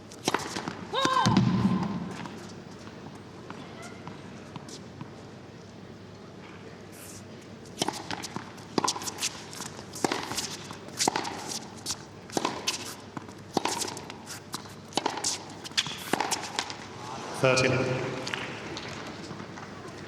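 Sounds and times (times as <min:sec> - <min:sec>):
racket hitting tennis ball: 0:00.2 - 0:02.5, 0:07.7 - 0:16.9
tennis ball bouncing: 0:00.2 - 0:02.5, 0:07.7 - 0:16.9.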